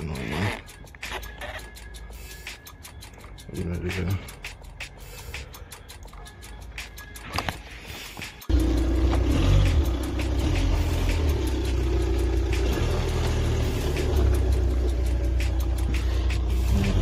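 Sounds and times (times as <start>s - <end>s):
car engine and road rumble: 6.0s - 17.0s.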